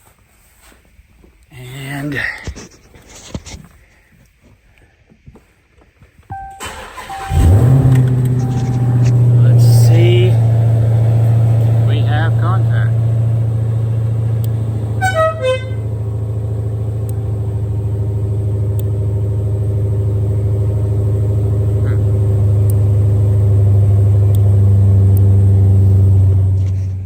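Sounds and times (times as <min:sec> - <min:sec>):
compressor humming: 0:06.3 - 0:27.0.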